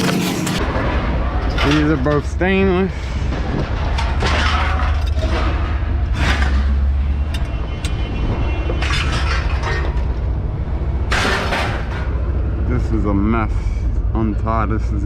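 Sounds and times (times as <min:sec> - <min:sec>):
scrap metal crashing: 0:00.0 - 0:02.4, 0:03.0 - 0:07.0, 0:08.6 - 0:10.2, 0:11.1 - 0:12.3
low rumble: 0:00.0 - 0:15.0.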